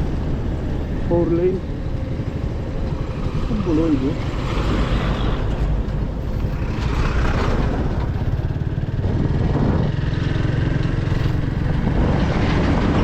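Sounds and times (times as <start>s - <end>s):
road and wind noise: 0.0s - 13.0s
motorcycle engine running: 6.3s - 13.0s.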